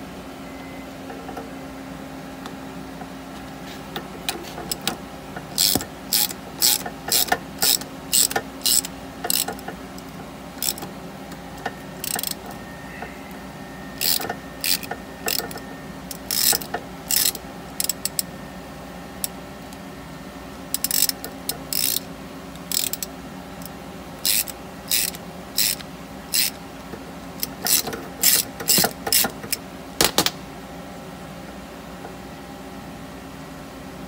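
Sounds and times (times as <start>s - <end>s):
ratchet wrench clicking: 4.3s - 10.9s, 11.6s - 12.6s, 14.0s - 18.3s, 20.7s - 26.6s, 27.4s - 29.6s.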